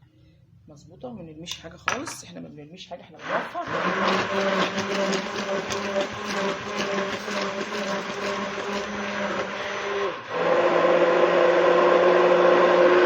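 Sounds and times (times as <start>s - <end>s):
hand blender motor: 3.6s - 13.0s
blender rattling against bowl: 3.7s - 10.1s.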